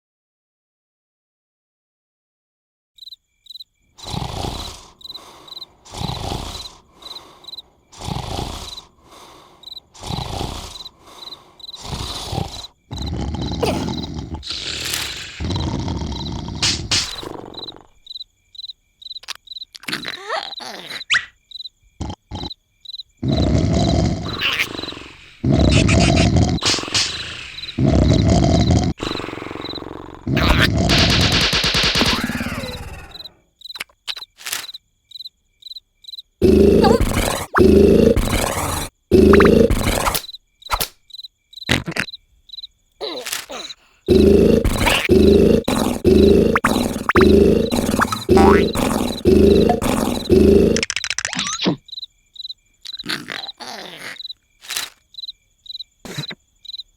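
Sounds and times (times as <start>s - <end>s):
cartoon cricket chirping: 3.0s - 56.9s
loud cartoon snore: 4.0s - 18.0s, 22.0s - 22.6s, 23.2s - 33.4s, 36.4s - 40.3s, 43.0s - 50.9s, 53.0s - 54.9s, 56.1s - 56.4s
sharp clicks: 30.4s - 34.8s, 36.8s - 41.0s.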